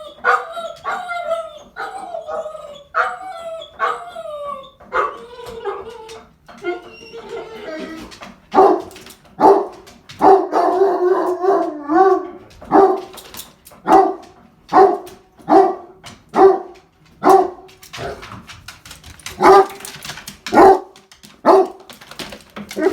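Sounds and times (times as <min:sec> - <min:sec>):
dog howling: 0:00.0 - 0:09.6, 0:10.2 - 0:13.1
dog barking: 0:00.2 - 0:03.2, 0:03.8 - 0:04.1, 0:04.9 - 0:05.8, 0:08.5 - 0:13.2, 0:13.8 - 0:18.2, 0:19.4 - 0:19.9, 0:20.5 - 0:21.9.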